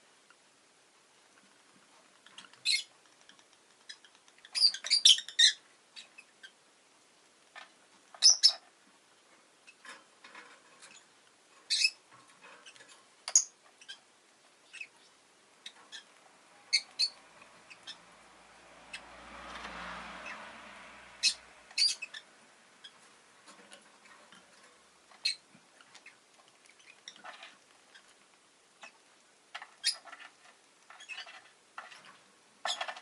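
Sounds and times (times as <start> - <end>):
faint small clicks: 2.1 - 4.8
bird high-pitched chirps: 2.4 - 2.9, 3.9 - 6.6, 8.1 - 8.7, 11.7 - 12.0, 16.7 - 18.0, 21.2 - 23.0, 25.2 - 26.2, 29.8 - 30.2.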